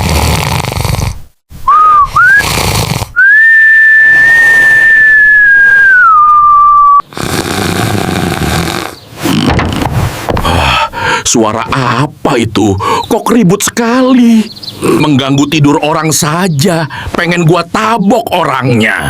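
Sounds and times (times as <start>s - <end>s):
rattling snore: 0.0s - 1.2s, 2.3s - 3.2s, 7.1s - 10.1s
whistling out-breath: 1.7s - 7.0s.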